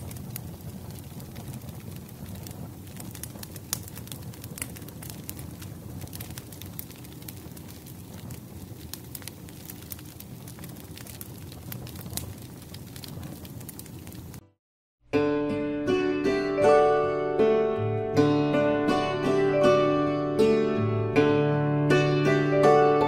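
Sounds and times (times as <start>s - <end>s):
log fire crackling: 0.0s - 14.4s.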